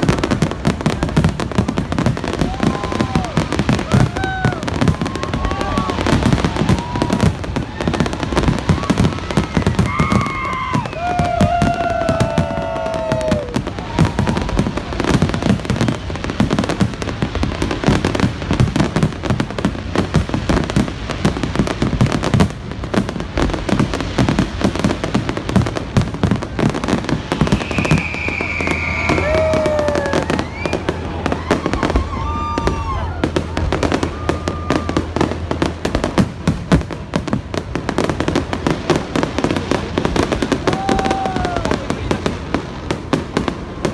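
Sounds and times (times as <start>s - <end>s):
fireworks bangs and crackles: 0.0s - 43.9s
falling whistling tones: 27.2s - 35.0s.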